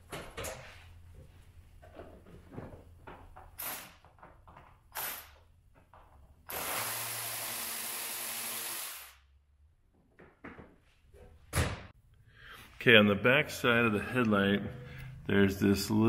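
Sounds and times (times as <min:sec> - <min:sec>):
cordless power drill running: 0:06.5 - 0:09.2.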